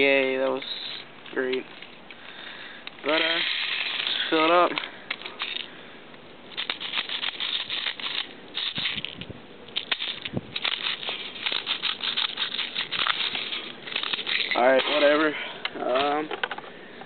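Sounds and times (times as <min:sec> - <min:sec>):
plastic pellets clicking and rattling: 0:03.0 - 0:05.7, 0:06.5 - 0:16.2.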